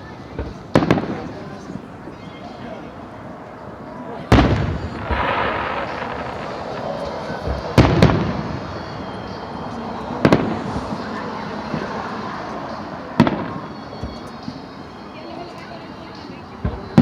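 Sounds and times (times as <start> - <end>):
fireworks crackling: 0.0 - 17.0
fireworks bangs: 0.3 - 2.3, 3.9 - 14.6, 16.6 - 17.0
echoing rumble: 2.9 - 13.7.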